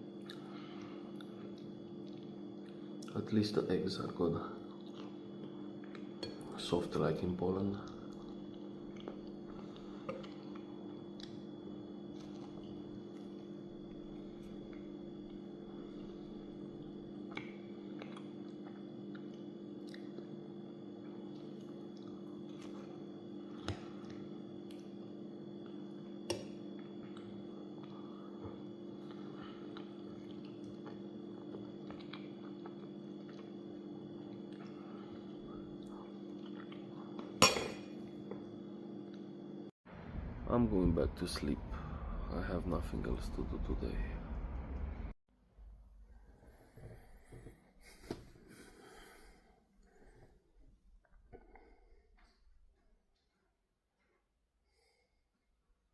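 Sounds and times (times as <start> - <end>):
steady low hum: 0.0 - 53.3
person chewing: 0.2 - 3.1, 4.8 - 6.2, 7.8 - 16.2, 17.2 - 24.9, 26.6 - 37.4.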